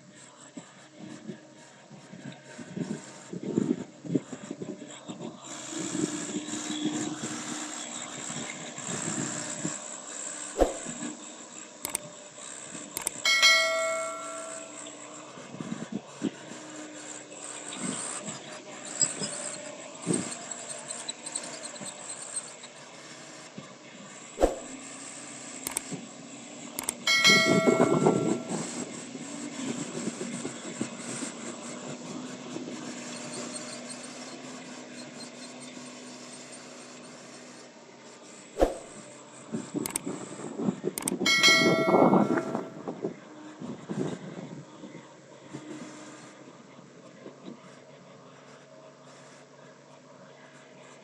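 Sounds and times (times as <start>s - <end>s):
short clicks: 13.0s - 14.7s, 26.8s - 28.6s, 41.0s - 41.2s
bell-like metallic strike: 13.0s - 14.9s, 26.9s - 28.7s, 41.2s - 42.9s.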